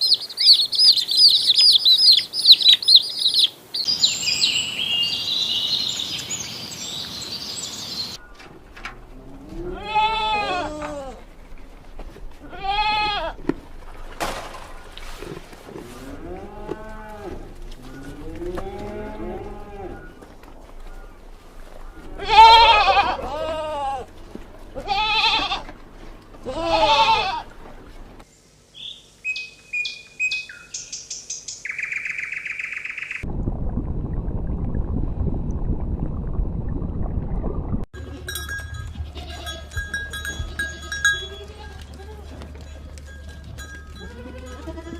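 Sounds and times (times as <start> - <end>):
low noise with faint crackling: 8.2 - 28.6
cow mooing: 15.9 - 20.1
small metal bells clinking: 38.0 - 44.9.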